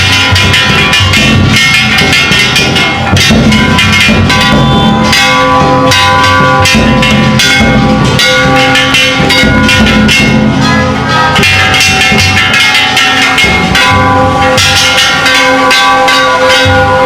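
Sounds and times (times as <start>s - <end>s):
bronze gongs ringing: 0.0s - 17.0s
large drum struck hard: 0.0s - 17.0s.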